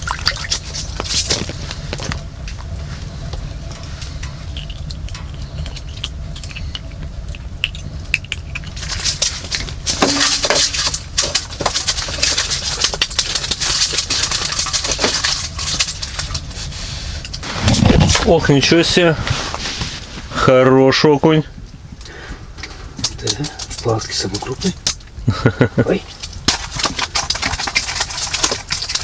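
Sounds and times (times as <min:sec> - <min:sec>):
low hum: 0:00.0 - 0:29.0
clatter of small clicks and rustles: 0:03.7 - 0:16.5, 0:26.1 - 0:29.0.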